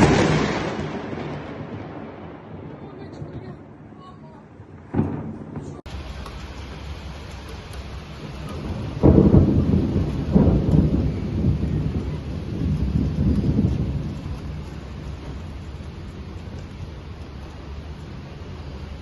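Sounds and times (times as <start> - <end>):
thunder clap and rumble: 0.0 - 19.0
heavy rain hiss: 5.8 - 19.0.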